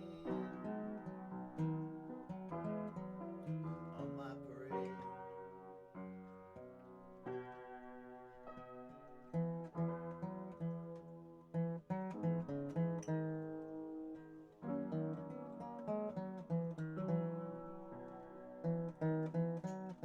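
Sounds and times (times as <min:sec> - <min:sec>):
acoustic guitar playing: 0:00.0 - 0:20.0.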